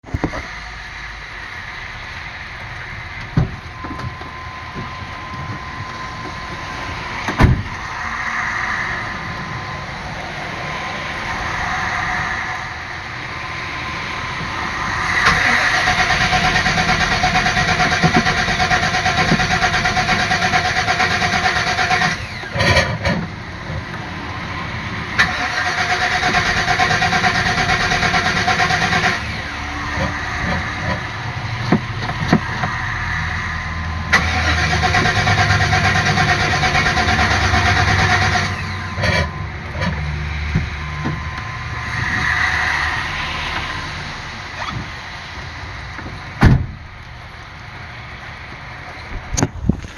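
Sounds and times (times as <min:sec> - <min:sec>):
starter motor cranking engine: 0:15.1 - 0:23.1, 0:25.2 - 0:31.2, 0:34.1 - 0:39.9.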